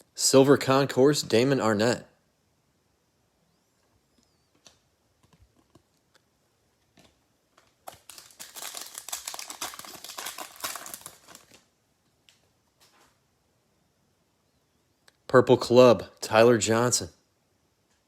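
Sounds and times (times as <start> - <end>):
wrapper crinkling and tearing: 7.8 - 11.6.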